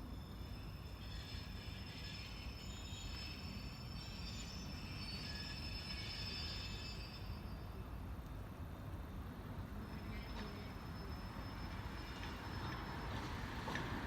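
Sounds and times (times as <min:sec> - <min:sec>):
train wheels squealing: 0:00.0 - 0:08.2, 0:09.8 - 0:14.0
low rumble of train: 0:00.0 - 0:14.0.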